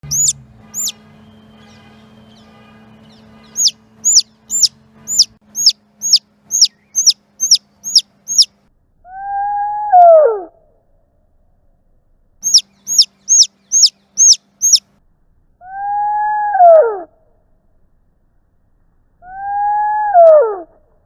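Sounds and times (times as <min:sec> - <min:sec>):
chick peeping: 0:00.0 - 0:00.9, 0:03.6 - 0:08.5, 0:12.4 - 0:14.8
slowed long low peep: 0:03.6 - 0:10.0.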